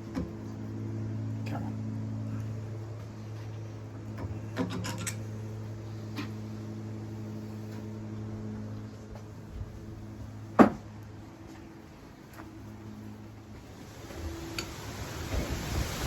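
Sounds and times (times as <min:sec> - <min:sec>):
steady low hum: 0:00.0 - 0:16.0
metal tools clinking on engine parts: 0:04.4 - 0:05.4.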